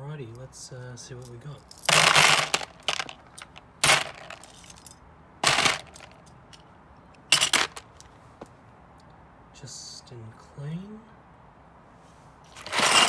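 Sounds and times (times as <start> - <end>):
scrap metal clattering: 1.8 - 6.2, 7.3 - 8.0, 12.5 - 13.0.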